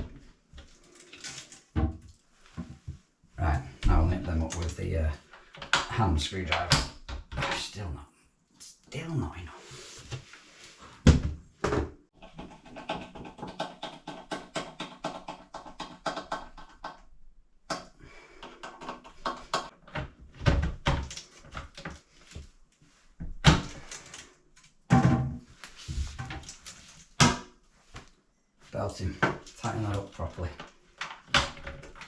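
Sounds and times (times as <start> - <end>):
toilet seat knocks and clunks: 24.9 - 25.5.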